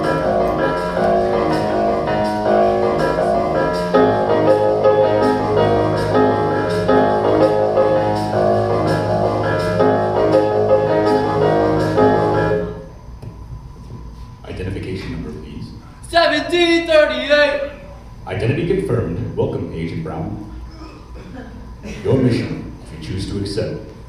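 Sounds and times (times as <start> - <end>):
piano-led instrumental music: 0.0 - 12.9.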